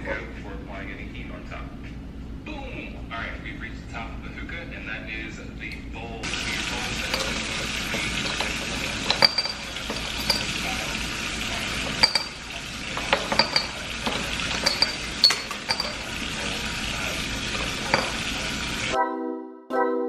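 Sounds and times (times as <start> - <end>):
sizzling hiss: 6.2 - 19.0
light metallic clinks: 6.9 - 11.0, 11.6 - 18.6.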